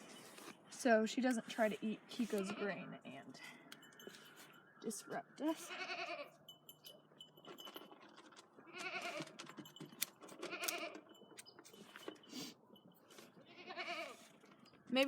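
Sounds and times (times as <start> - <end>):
goat bleating: 5.6 - 6.4, 8.7 - 9.3, 13.4 - 14.2.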